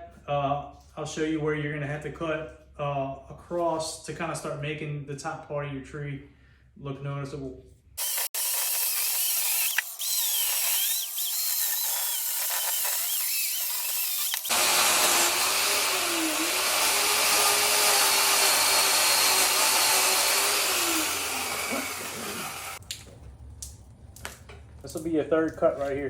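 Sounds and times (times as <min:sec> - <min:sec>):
electric chainsaw cutting log: 0:08.0 - 0:22.8.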